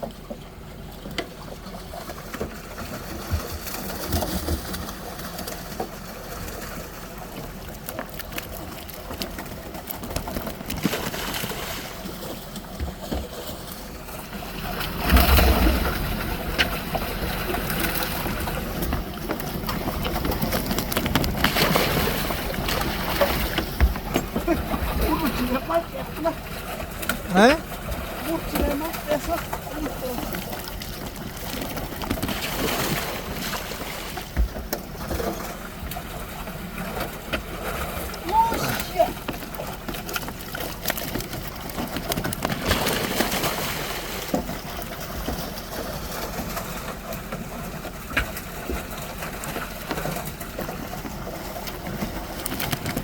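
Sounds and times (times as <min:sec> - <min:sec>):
water splashing and sloshing: 0:00.0 - 0:53.0
water rushing surge: 0:13.4 - 0:53.0.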